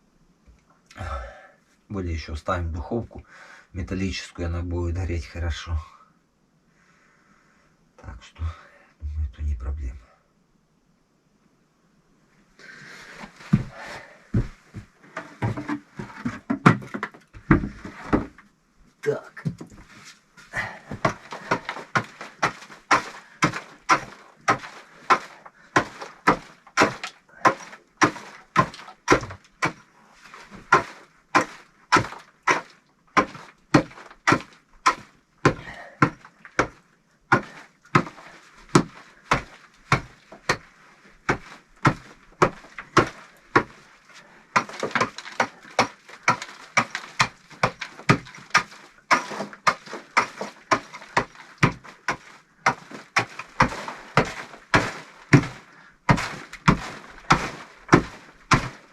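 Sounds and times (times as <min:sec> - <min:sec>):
rhythmic knocking of hand tool: 0:20.6 - 0:43.8, 0:44.5 - 0:58.9.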